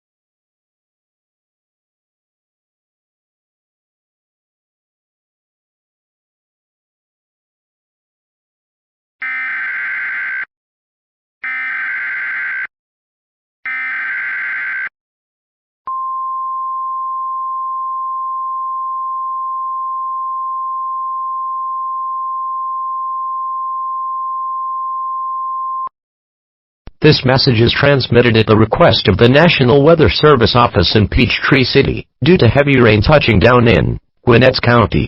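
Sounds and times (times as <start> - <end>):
screechy data tones: 9.2 - 10.5, 11.4 - 12.7, 13.7 - 14.9.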